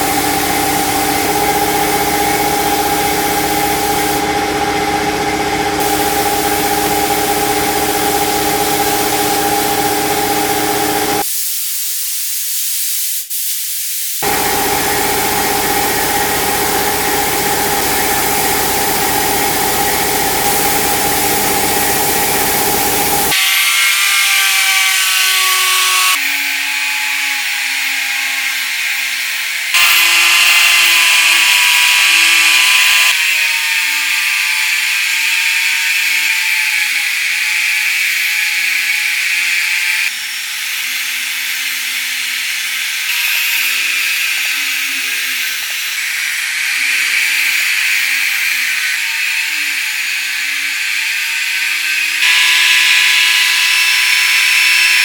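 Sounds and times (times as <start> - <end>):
electric tool motor hum: 0.0 - 11.2, 14.2 - 55.0
high-pitched tool hum: 0.0 - 11.3, 14.2 - 26.4, 29.8 - 33.6, 52.2 - 55.0.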